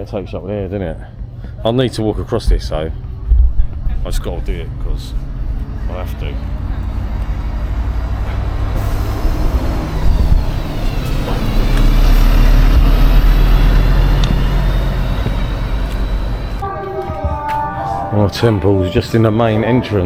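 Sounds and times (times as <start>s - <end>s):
heavy vehicle engine rumble passing: 1.0s - 16.7s.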